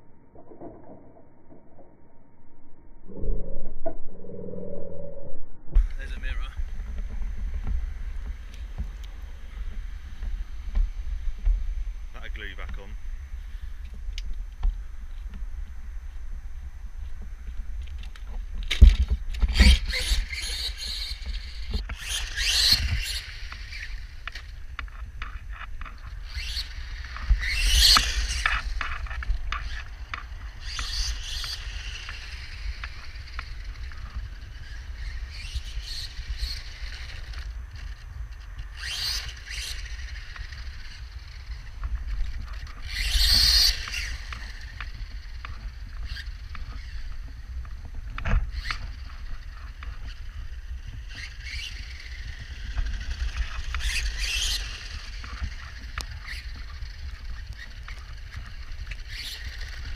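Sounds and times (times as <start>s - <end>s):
steady low rumble: 0.0s - 20.3s
toy truck motor whine: 19.6s - 24.5s, 38.6s - 47.2s, 50.1s - 59.9s.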